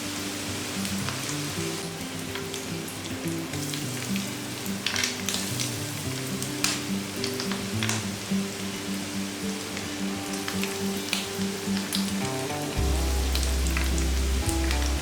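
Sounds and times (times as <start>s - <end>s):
food sizzling in hot oil: 0.0s - 15.0s
soft background music: 0.0s - 15.0s.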